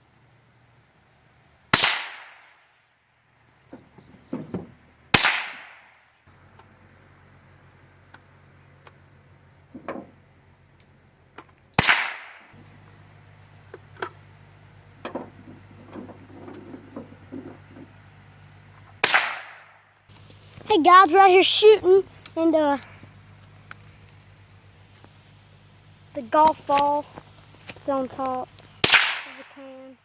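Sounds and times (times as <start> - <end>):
rifle gunshots: 1.7 - 2.6, 5.1 - 6.0, 11.8 - 12.6, 19.0 - 19.9, 28.8 - 29.6.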